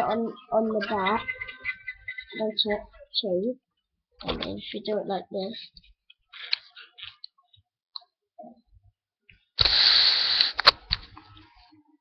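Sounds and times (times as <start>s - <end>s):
toy car motor whirring: 9.6s - 10.6s.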